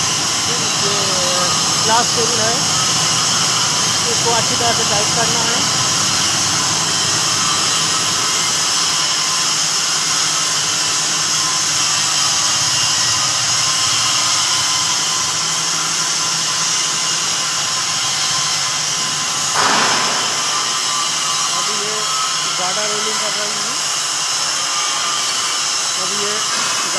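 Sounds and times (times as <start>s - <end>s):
welding machine hum and hiss: 0.0s - 26.9s.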